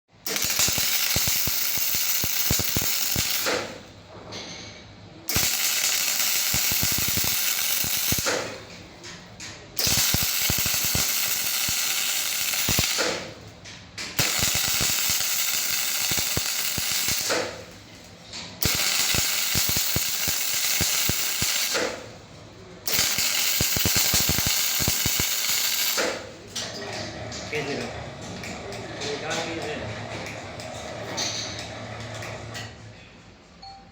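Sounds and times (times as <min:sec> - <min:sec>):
crackling welding machine: 0:00.1 - 0:04.1, 0:05.3 - 0:22.2, 0:22.8 - 0:26.7.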